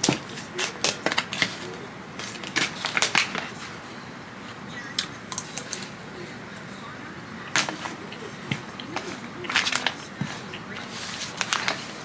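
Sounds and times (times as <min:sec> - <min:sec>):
cutlery clicks and taps: 0:05.0 - 0:05.9.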